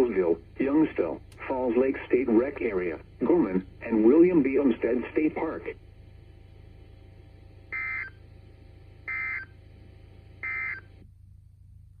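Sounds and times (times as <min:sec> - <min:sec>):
faint steady hum: 0:00.0 - 0:12.0
electronic tone bursts: 0:07.7 - 0:08.2, 0:09.0 - 0:09.5, 0:10.4 - 0:10.9.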